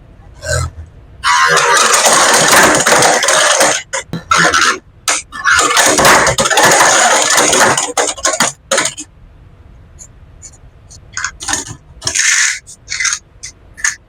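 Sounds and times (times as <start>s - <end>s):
plastic parts rattling: 1.5s - 9.0s
plastic parts clicking: 1.6s - 9.0s.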